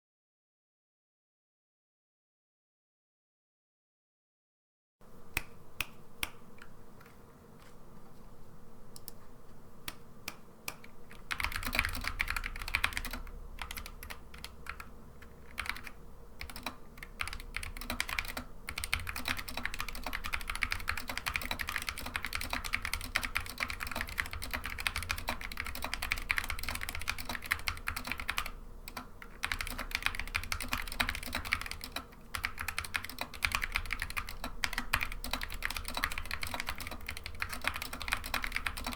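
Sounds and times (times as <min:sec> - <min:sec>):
typing on mechanical keyboard: 0:10.7 - 0:38.9.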